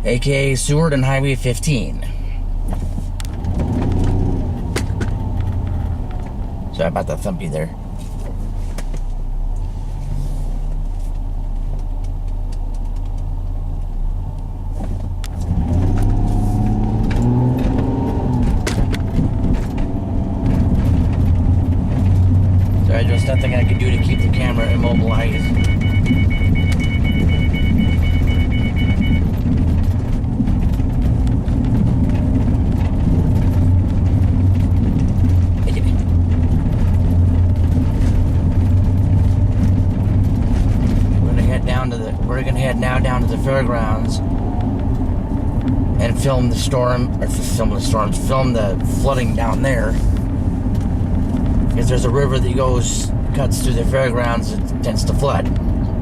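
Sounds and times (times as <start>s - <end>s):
car engine accelerating: 0.0s - 56.0s
seatbelt reminder chime beeping: 22.9s - 29.3s.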